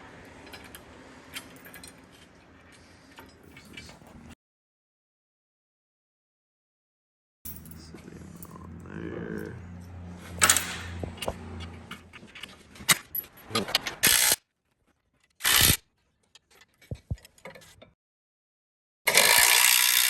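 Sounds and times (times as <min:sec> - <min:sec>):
metal brackets and bolts clinking: 0:00.4 - 0:04.3, 0:07.5 - 0:08.8, 0:09.8 - 0:14.4.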